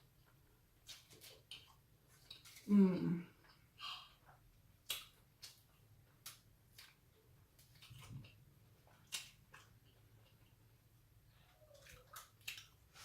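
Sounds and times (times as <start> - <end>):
chewing mouth sounds: 11.4 - 13.0.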